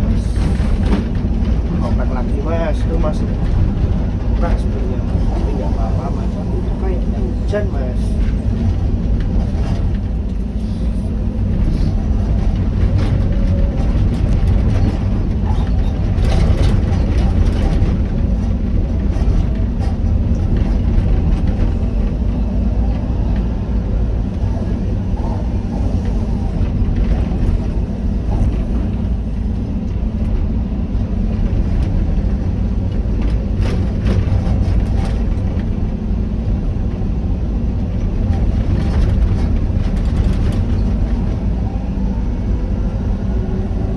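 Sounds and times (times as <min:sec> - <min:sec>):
excavator diesel engine running: 0:00.0 - 0:43.9
rattles and knocks: 0:08.0 - 0:22.5, 0:32.9 - 0:35.9, 0:38.0 - 0:41.5.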